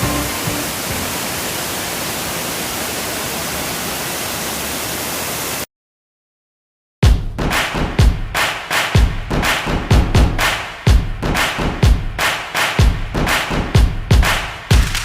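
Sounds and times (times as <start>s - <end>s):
waterfall roaring: 0.0s - 5.6s.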